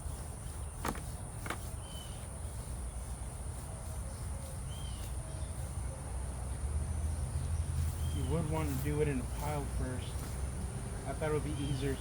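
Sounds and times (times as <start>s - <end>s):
bird chirps: 0.0s - 8.5s.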